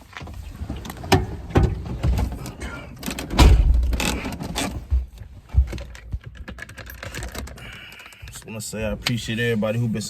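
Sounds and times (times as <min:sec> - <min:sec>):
door latch clicks and knocks: 0:03.2 - 0:04.2
car door thump: 0:03.3 - 0:04.1.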